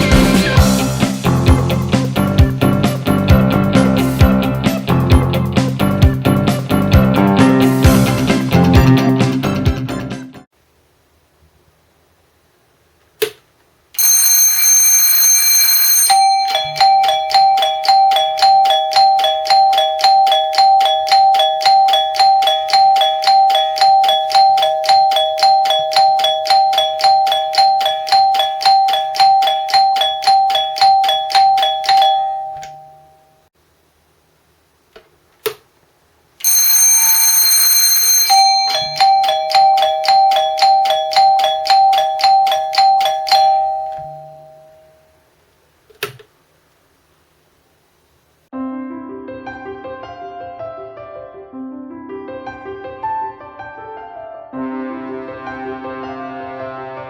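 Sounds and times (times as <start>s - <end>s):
electric alarm bell ringing: 14.0s - 33.5s, 36.4s - 45.1s.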